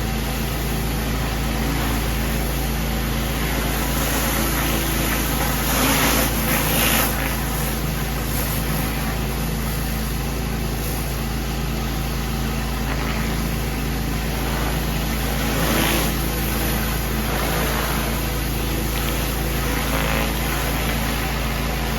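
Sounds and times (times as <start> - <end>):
engine drone: 0.0 - 21.9
pressure washer spray hiss: 3.3 - 11.2.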